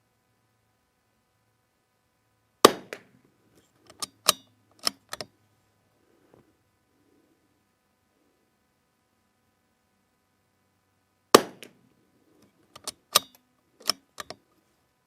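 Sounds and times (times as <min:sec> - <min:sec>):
rifle shot crack: 0:02.6 - 0:03.1, 0:11.3 - 0:11.8
rifle bolt metallic clicks: 0:03.8 - 0:05.3, 0:12.7 - 0:14.4.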